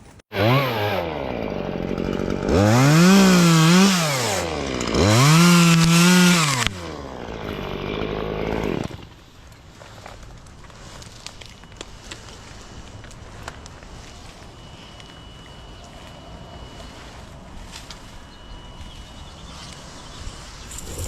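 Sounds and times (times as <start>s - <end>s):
chainsaw revving and idling: 0.3s - 9.2s, 20.7s - 21.0s.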